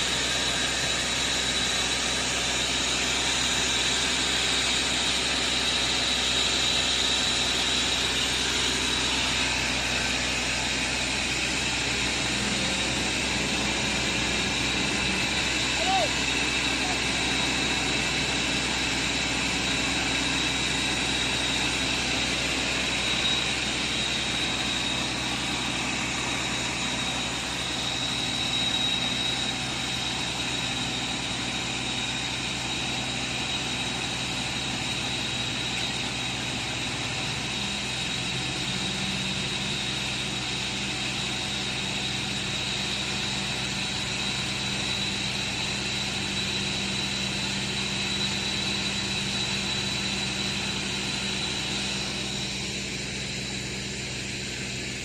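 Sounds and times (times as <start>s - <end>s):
low machine hum: 0.0s - 40.7s
high machine whine: 0.0s - 55.0s.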